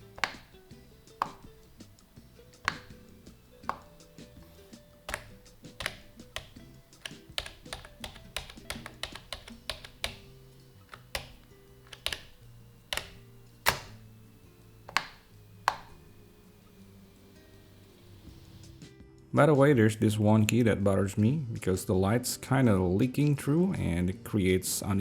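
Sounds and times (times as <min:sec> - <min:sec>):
keyboard key clicks: 0:00.0 - 0:16.2
soft background music: 0:00.0 - 0:25.0.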